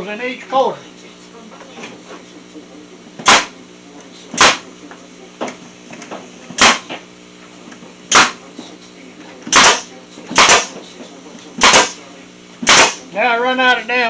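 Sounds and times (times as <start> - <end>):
staple gun shots into wood: 3.2 - 3.6, 4.4 - 4.6, 6.6 - 7.0, 8.1 - 8.4, 9.5 - 10.8, 11.6 - 12.0, 12.6 - 13.0.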